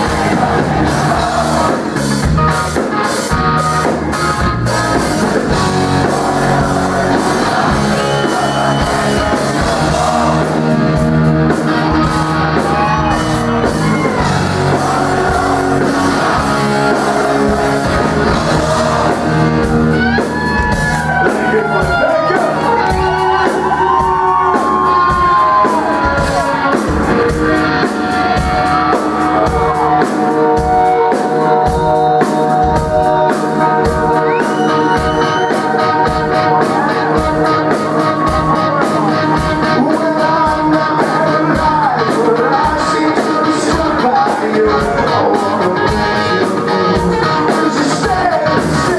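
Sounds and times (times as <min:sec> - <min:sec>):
rock band playing: 0:00.0 - 0:48.9
person singing: 0:04.9 - 0:11.0, 0:21.2 - 0:48.9.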